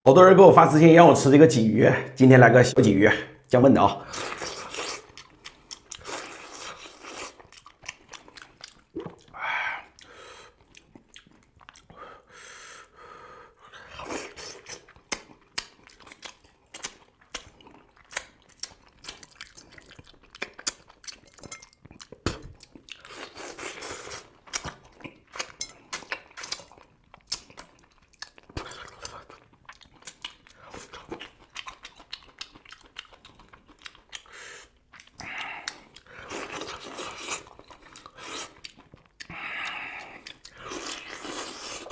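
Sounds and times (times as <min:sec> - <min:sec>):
slurping: 0:04.0 - 0:11.2, 0:34.2 - 0:41.9
person chewing and crunching: 0:04.0 - 0:12.0, 0:13.8 - 0:41.9.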